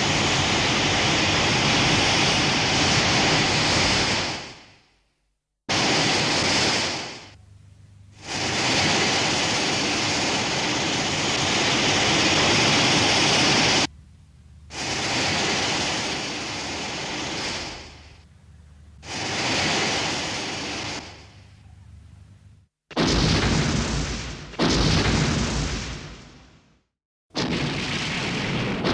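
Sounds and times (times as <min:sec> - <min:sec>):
rushing hiss-like noise bursts: 0:00.0 - 0:05.0, 0:05.7 - 0:07.4, 0:08.1 - 0:13.9, 0:14.7 - 0:18.3, 0:19.0 - 0:21.6.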